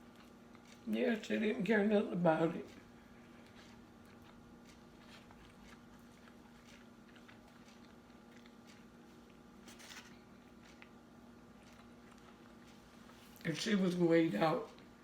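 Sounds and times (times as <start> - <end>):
person chewing: 0.0 - 1.0, 2.6 - 13.6
steady low hum: 0.0 - 15.0
crunch or rustle: 3.4 - 11.0.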